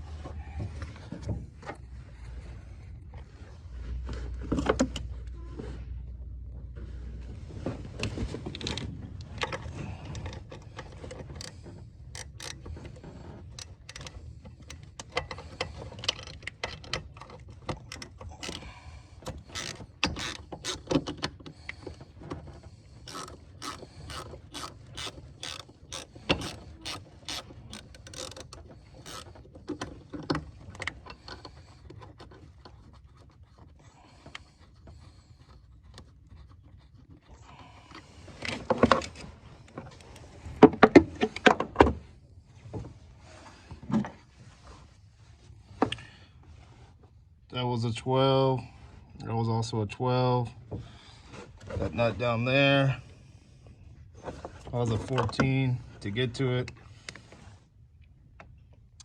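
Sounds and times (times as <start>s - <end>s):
ratchet wrench clicking: 12.2s - 12.6s, 18.4s - 18.7s, 19.3s - 21.0s, 23.1s - 29.4s.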